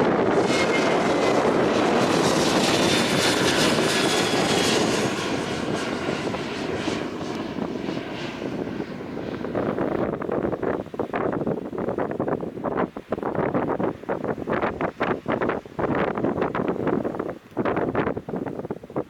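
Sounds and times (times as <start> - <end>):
airliner engines roaring: 0.0 - 19.0.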